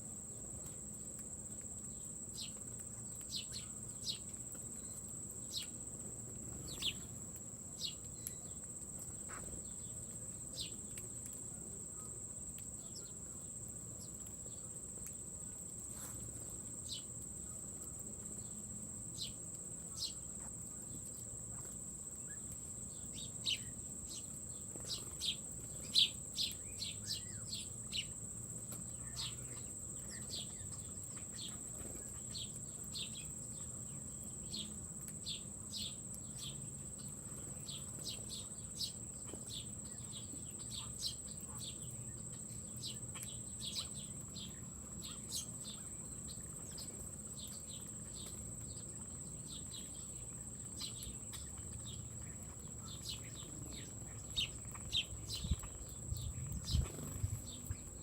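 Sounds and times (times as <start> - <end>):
small birds chirping: 0.3 - 58.0
high-pitched insect trill: 21.8 - 58.0.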